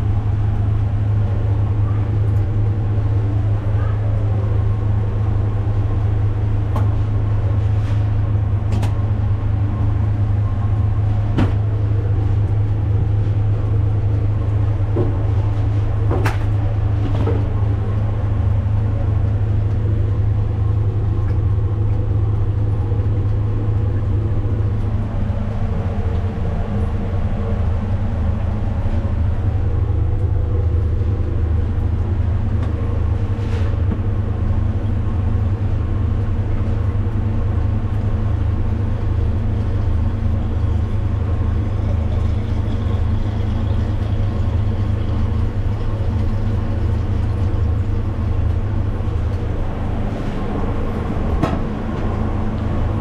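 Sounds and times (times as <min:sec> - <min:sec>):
loud low mechanical hum: 0:00.0 - 0:53.0.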